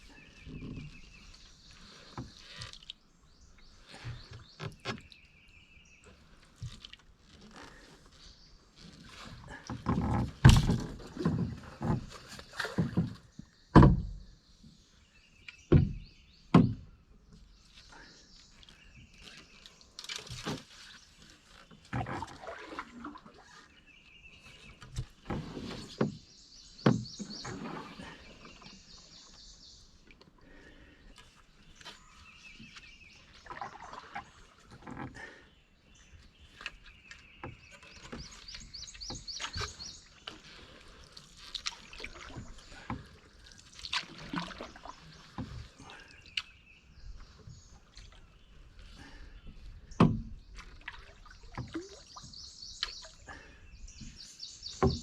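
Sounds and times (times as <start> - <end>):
paddle splashing in water: 6.0 - 14.2, 17.9 - 35.4, 36.3 - 55.0
paddle knocking against hull: 9.5 - 14.3, 15.7 - 17.0, 24.9 - 27.9, 49.6 - 53.0, 54.0 - 55.0
birds calling: 23.4 - 55.0
water dripping: 50.8 - 53.2.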